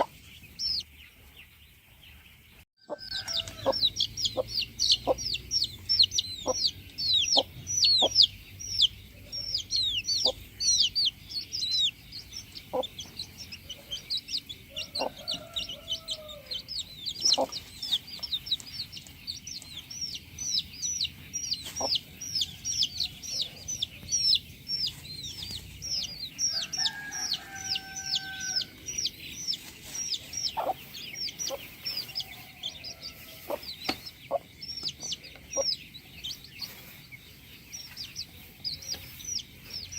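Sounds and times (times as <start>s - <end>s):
chickens clucking: 0.0s - 2.2s, 2.8s - 39.9s
chicks chirping: 0.0s - 39.9s
rooster crowing: 2.8s - 4.1s, 14.7s - 16.7s, 26.5s - 28.8s, 32.1s - 33.6s.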